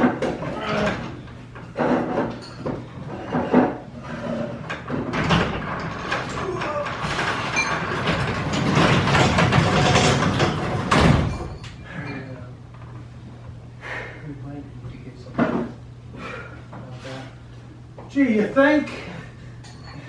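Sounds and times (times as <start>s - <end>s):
garage door rattling scrape: 0.0s - 11.8s
garage door knocks: 4.8s - 11.6s.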